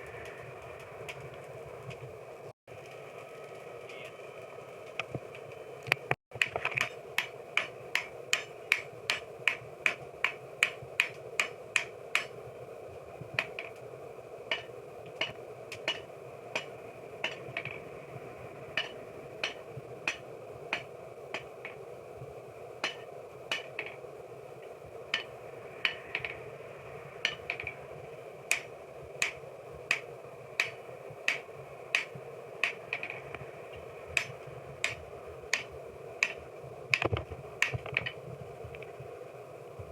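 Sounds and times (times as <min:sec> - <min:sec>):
steady hum: 0:00.0 - 0:39.9
hammer striking steel on anvil: 0:06.8 - 0:12.4, 0:14.5 - 0:17.7, 0:18.8 - 0:21.8, 0:22.8 - 0:24.0.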